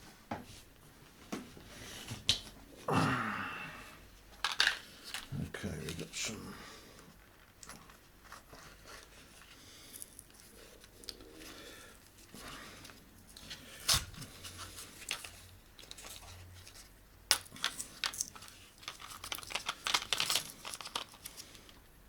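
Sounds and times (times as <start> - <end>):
packaging crinkling and tearing: 17.4 - 21.8.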